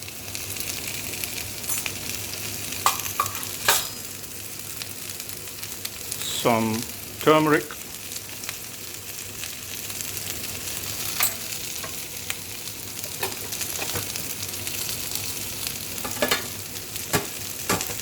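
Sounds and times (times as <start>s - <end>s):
vegetables sizzling in oil: 0.0s - 18.0s
cooking utensil clicks and scrapes: 11.0s - 12.1s, 13.0s - 14.2s, 16.0s - 18.0s.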